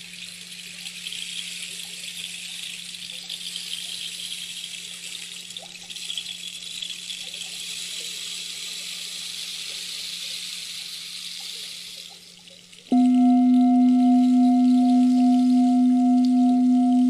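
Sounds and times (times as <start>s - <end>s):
faint low hum: 12.9s - 17.0s.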